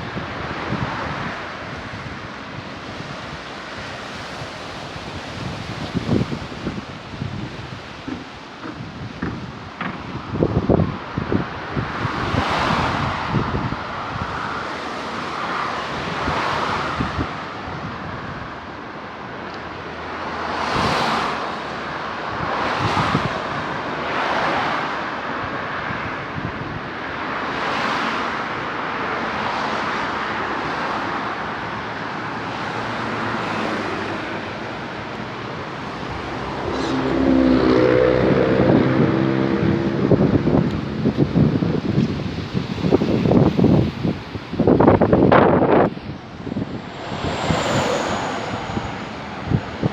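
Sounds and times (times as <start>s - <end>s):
cars passing: 0.0s - 49.9s
wind on microphone: 0.0s - 49.9s
vehicle engine low drone: 31.6s - 44.0s, 44.6s - 49.9s.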